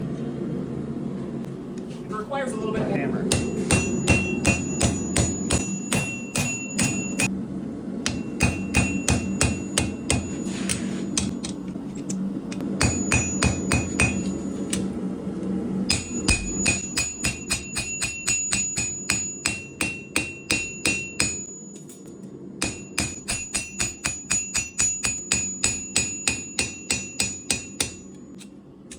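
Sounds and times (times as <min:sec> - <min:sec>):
steady low hum: 0:00.0 - 0:28.9
hammer ringing on anvil: 0:03.3 - 0:07.3, 0:08.0 - 0:11.3, 0:12.8 - 0:14.6, 0:15.9 - 0:22.0, 0:22.6 - 0:28.2.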